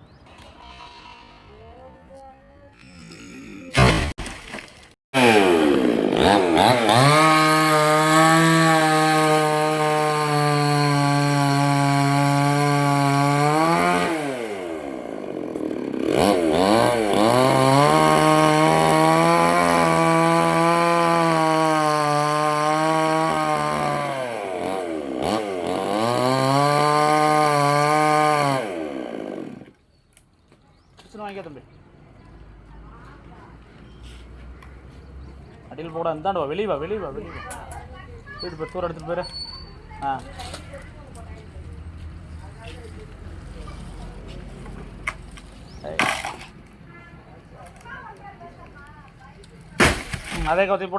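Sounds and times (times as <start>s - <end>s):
chainsaw cutting wood: 3.8s - 29.8s, 46.0s - 46.6s.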